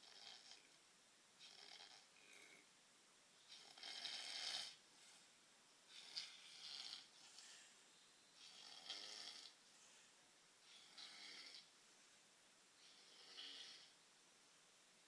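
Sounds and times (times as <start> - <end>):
faint snoring: 0.0 - 0.8, 1.4 - 2.7, 3.5 - 4.8, 5.9 - 7.7, 8.4 - 9.6, 10.6 - 11.7, 12.8 - 14.0.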